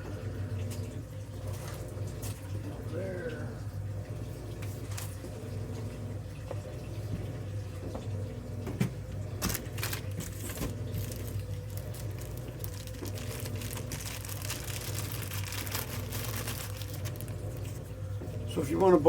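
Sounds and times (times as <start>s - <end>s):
steady low hum: 8.4s - 19.0s
packaging rustling: 9.4s - 17.8s.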